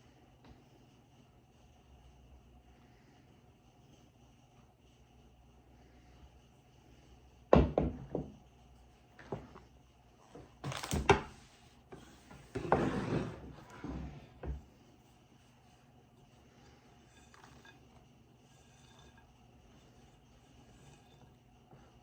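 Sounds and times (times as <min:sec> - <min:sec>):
kitchen knocks and thuds: 0:07.5 - 0:08.4.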